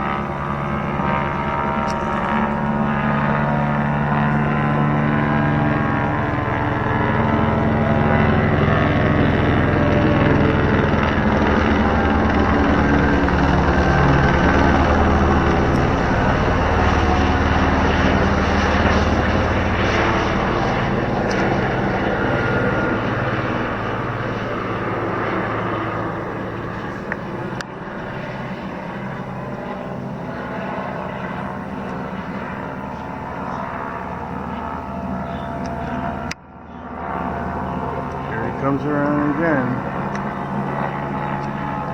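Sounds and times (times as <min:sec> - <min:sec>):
helicopter flying past: 0:00.0 - 0:41.9.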